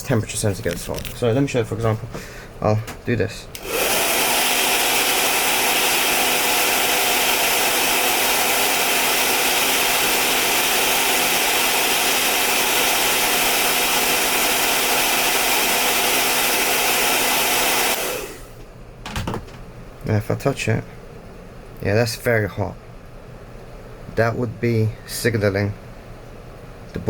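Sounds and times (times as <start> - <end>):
hair dryer blowing: 3.6 - 18.6.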